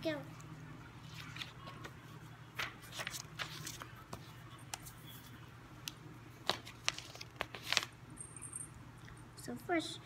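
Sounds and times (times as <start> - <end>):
low steady hum: 0.0 - 10.0
paper rustling and tapping: 1.2 - 4.9.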